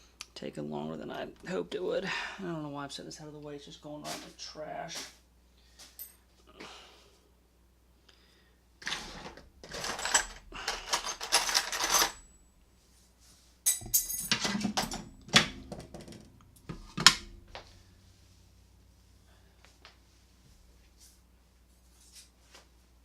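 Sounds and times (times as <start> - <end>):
metal lock parts clinking: 8.8 - 12.4, 13.7 - 16.3.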